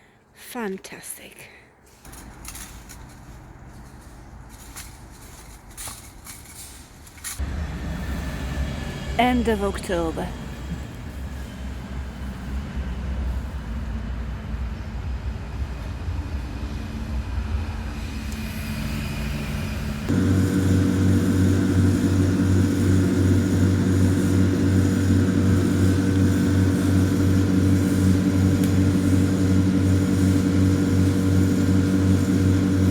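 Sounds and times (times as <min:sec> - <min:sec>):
small engine running: 0:18.0 - 0:32.9.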